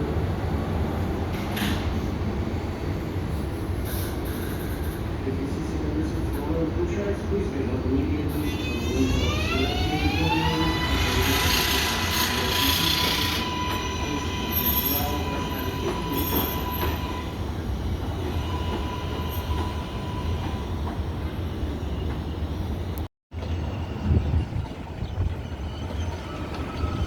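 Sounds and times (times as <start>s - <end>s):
subway train running: 0.0s - 27.0s
high wheel squeals: 8.4s - 17.4s.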